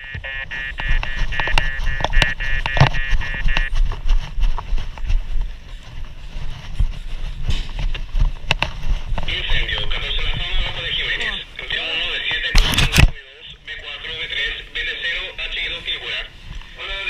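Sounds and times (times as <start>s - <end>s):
rapid pulsing electronic beep: 0.0s - 3.8s.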